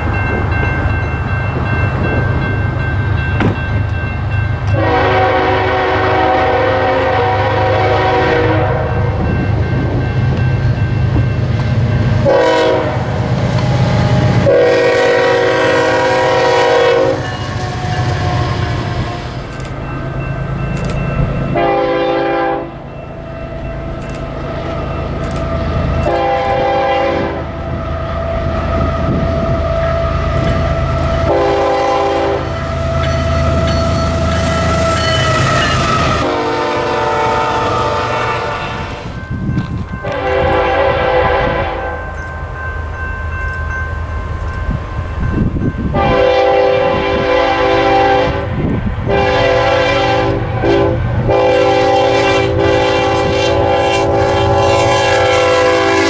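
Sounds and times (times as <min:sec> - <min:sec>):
train wheels on rails: 0:00.0 - 0:56.0
locomotive air horn blasts: 0:04.7 - 0:09.2, 0:12.2 - 0:19.1, 0:21.6 - 0:22.8, 0:26.0 - 0:27.8, 0:31.2 - 0:32.7, 0:33.4 - 0:39.2, 0:40.0 - 0:42.1, 0:45.9 - 0:48.5, 0:49.1 - 0:56.0
locomotive engine running: 0:15.1 - 0:45.9.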